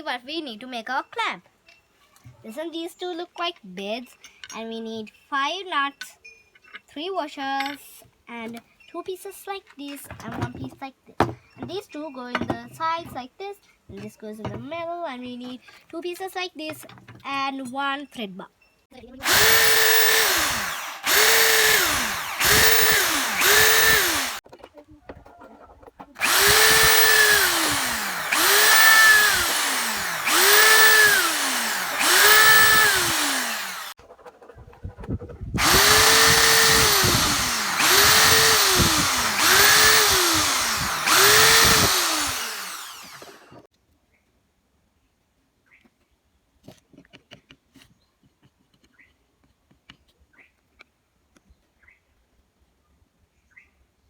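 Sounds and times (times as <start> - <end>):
electric drill bursts: 19.2 - 24.4, 26.2 - 34.0, 35.6 - 43.7.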